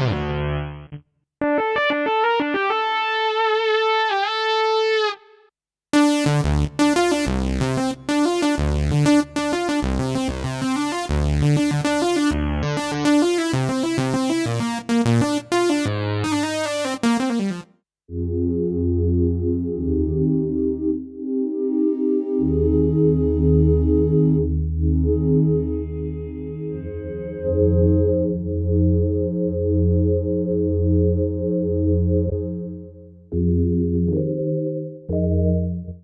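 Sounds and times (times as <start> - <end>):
synthesizer bass and chords pattern: 0.0 - 3.6, 6.0 - 36.0
synthesizer held chord: 16.8 - 32.7.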